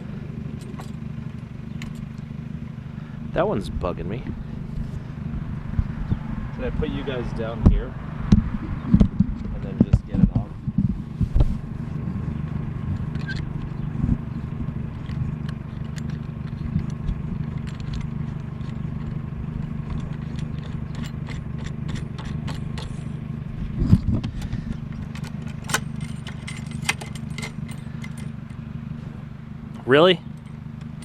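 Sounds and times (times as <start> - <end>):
steady low hum: 0.0 - 31.0
tools clicking and scraping on metal: 13.0 - 13.8, 14.9 - 23.2, 24.3 - 28.6.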